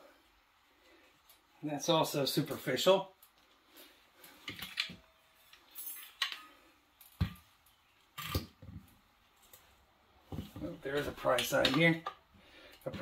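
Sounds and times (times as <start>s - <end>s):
metal tools clinking: 4.6s - 7.2s.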